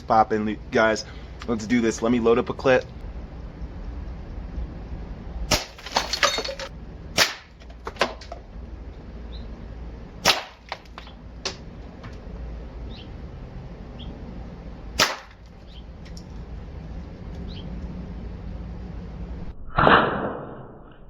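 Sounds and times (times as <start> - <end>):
airgun shots: 7.2 - 7.6, 10.2 - 10.8, 15.0 - 15.4, 19.7 - 20.8.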